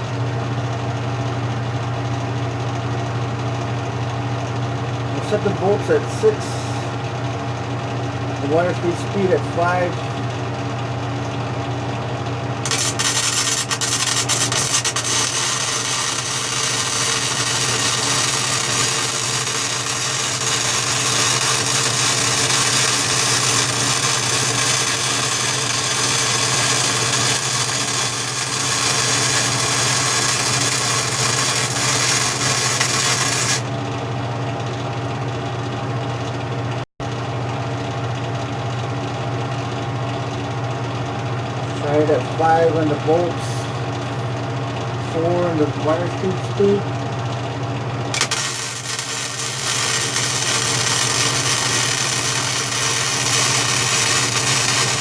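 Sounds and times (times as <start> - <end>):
welder hum: 5.2 - 6.9, 12.6 - 33.7, 48.1 - 55.0
welding arc crackling: 12.6 - 33.7, 48.1 - 55.0.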